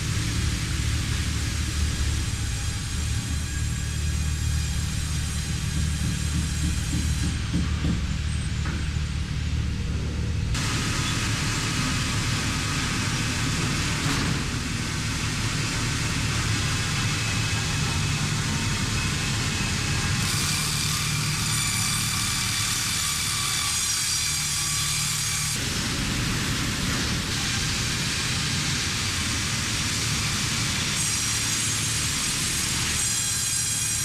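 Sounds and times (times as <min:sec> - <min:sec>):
machinery whining tones: 0:00.0 - 0:06.0
heavy machinery engine drone: 0:00.0 - 0:23.2, 0:24.4 - 0:32.9.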